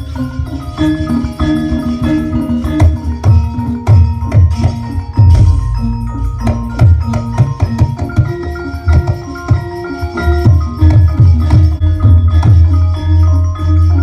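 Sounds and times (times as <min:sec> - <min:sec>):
heavy bass: 0:00.0 - 0:08.6
melody of short stepped notes: 0:00.0 - 0:14.0
quick percussive beat: 0:00.0 - 0:14.0.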